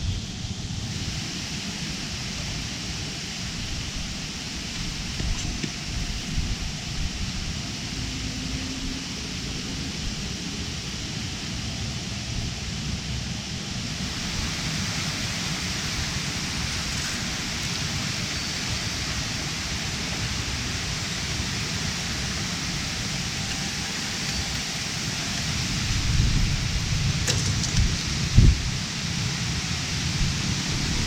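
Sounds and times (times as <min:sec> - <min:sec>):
river water rushing: 0:13.7 - 0:31.0.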